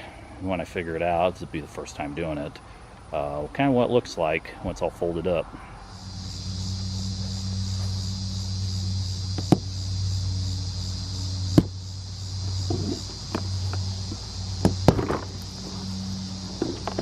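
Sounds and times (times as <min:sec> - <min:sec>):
insects chirring: 0:00.0 - 0:17.0
low steady hum: 0:00.0 - 0:17.0
sharp knocks or clicks: 0:09.4 - 0:09.7, 0:11.5 - 0:11.8, 0:12.6 - 0:15.4.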